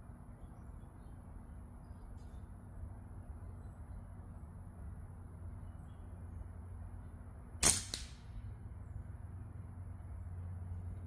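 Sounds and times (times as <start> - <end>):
airgun shot: 7.6 - 8.3.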